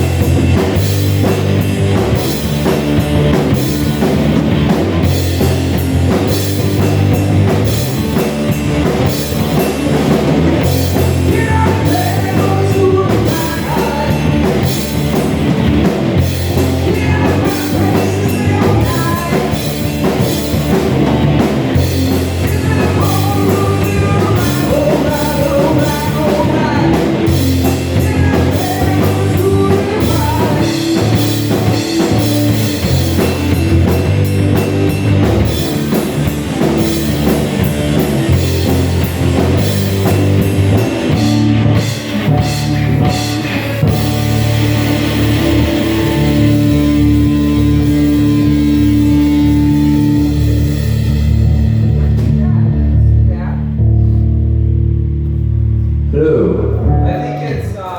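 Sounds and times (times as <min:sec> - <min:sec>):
bass guitar: 0:00.0 - 0:57.9
distorted electric guitars: 0:00.0 - 0:57.9
pounding drum kit: 0:00.0 - 0:57.9
person singing: 0:11.0 - 0:14.8, 0:16.7 - 0:20.2, 0:22.2 - 0:32.9.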